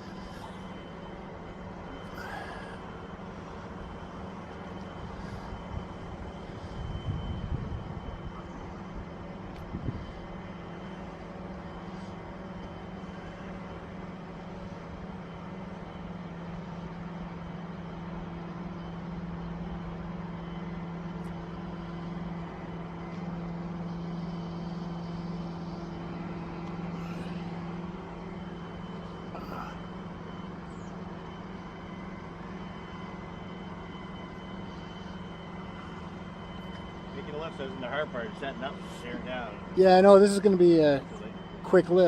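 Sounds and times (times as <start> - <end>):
crane engine humming: 0.0 - 42.0.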